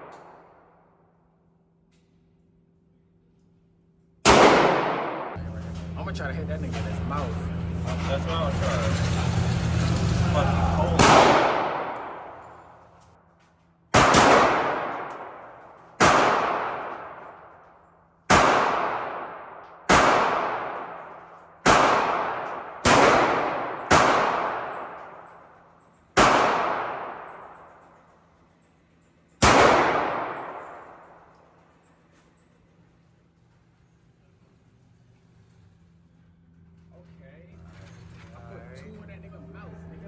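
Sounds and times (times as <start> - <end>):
gunshots: 4.2 - 5.4, 10.8 - 12.6, 13.9 - 17.5, 18.3 - 25.3, 26.2 - 27.6, 29.4 - 31.2.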